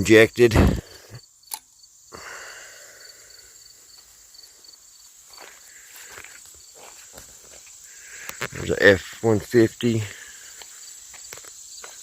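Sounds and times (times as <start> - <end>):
insects buzzing and chirping: 0.0 - 12.0
footsteps in dirt and grass: 3.9 - 12.0.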